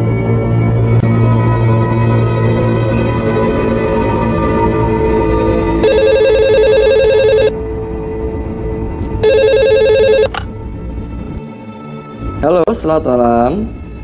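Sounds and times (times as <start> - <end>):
low music drone: 0.0 - 14.0
telephone ringing: 5.8 - 7.5, 9.2 - 10.4.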